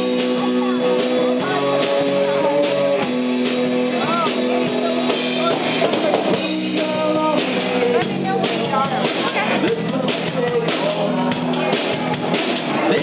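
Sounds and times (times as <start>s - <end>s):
drum kit: 0.0s - 13.0s
electric guitar chords: 0.0s - 13.0s
muffled live rock band: 0.0s - 13.0s.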